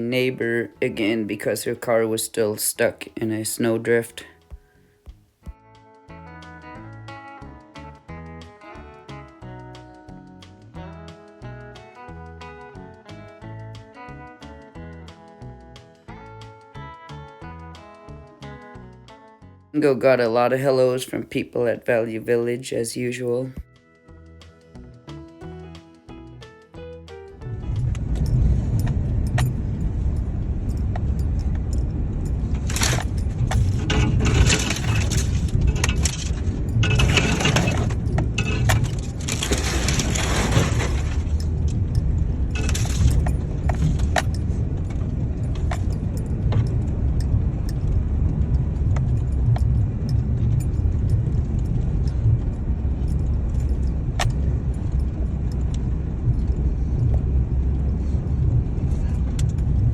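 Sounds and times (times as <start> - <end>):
road rumble inside car: 27.4 - 59.9
metallic jingling: 27.8 - 57.1.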